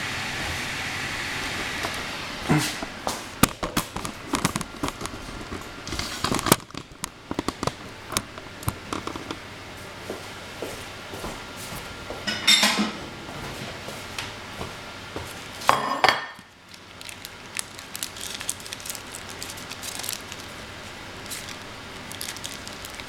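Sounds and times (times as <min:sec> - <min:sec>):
parchment paper crinkling: 0:03.7 - 0:09.4, 0:16.6 - 0:23.0.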